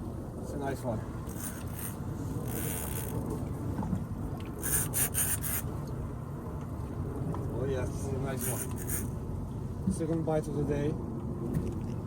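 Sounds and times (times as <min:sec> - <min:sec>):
short rasping scrapes: 0:01.3 - 0:03.2, 0:04.6 - 0:05.7, 0:08.4 - 0:09.2.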